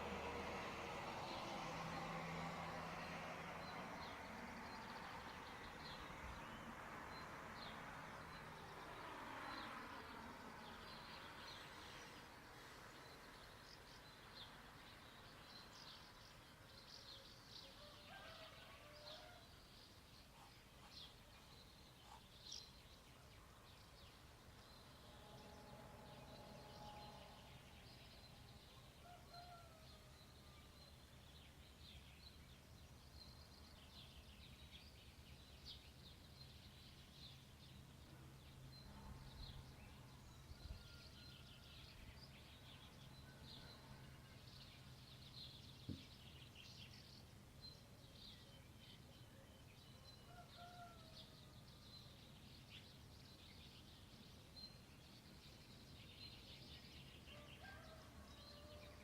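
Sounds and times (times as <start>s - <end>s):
small birds chirping: 19.7s - 25.3s.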